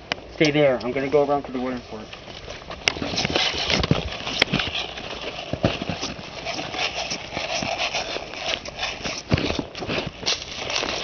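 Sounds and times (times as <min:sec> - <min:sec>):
vegetation rustling: 0:01.0 - 0:11.0
footsteps crunching dry leaves: 0:02.2 - 0:11.0.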